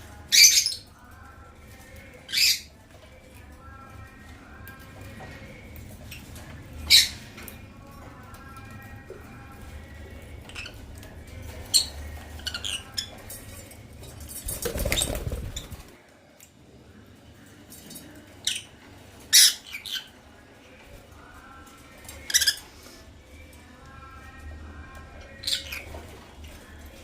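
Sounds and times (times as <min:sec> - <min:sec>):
wings flapping: 0:14.3 - 0:16.0
birds chirping: 0:14.4 - 0:15.9.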